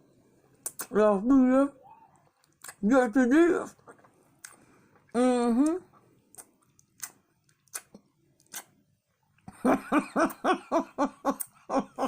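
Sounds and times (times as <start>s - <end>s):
chewing clicks and smacks: 0.6s - 0.9s, 2.1s - 2.8s, 6.3s - 8.8s
loud rhythmic laughter: 9.5s - 12.0s.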